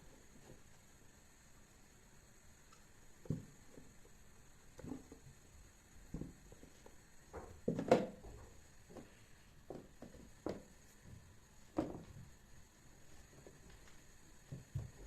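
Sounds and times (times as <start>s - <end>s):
items knocking on kitchen surface: 7.3s - 9.1s, 11.8s - 12.2s.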